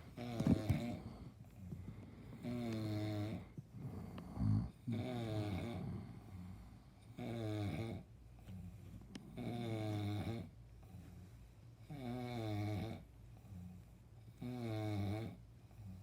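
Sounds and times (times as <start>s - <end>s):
quiet breathing: 0.0s - 16.0s
man snoring: 0.1s - 1.3s, 2.3s - 8.1s, 9.3s - 10.5s, 11.9s - 13.0s, 14.4s - 16.0s.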